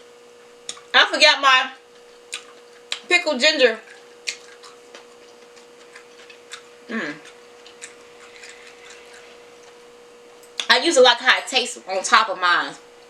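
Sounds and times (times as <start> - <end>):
faint steady hum: 0.0 - 13.0
person murmuring: 6.9 - 7.3.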